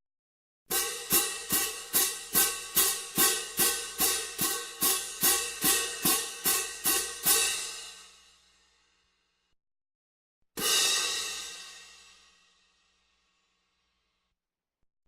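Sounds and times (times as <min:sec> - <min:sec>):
cymbal struck in rhythm: 0:00.7 - 0:08.7, 0:10.6 - 0:12.8.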